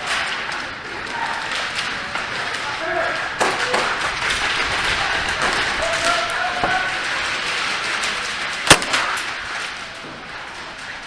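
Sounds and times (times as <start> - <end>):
faint distant shouting: 5.0 - 7.1
airsoft gun shot: 8.7 - 9.1.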